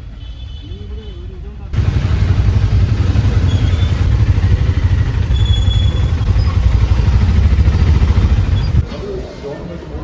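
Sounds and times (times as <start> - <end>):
vehicle engine and road rumble: 1.0 - 8.9.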